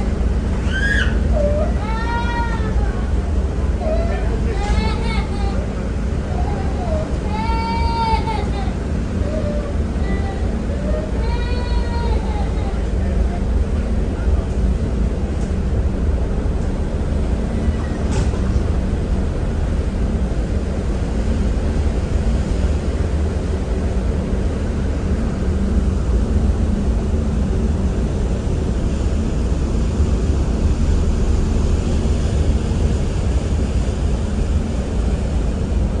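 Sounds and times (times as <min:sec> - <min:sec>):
steady hum: 0:00.0 - 0:17.7
ferry engines droning: 0:00.0 - 0:36.0.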